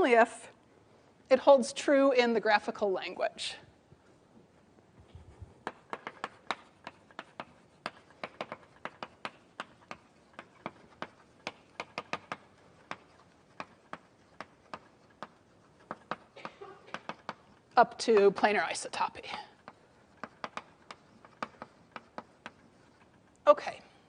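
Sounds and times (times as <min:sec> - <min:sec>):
sharp taps on a board: 0:20.2 - 0:20.7.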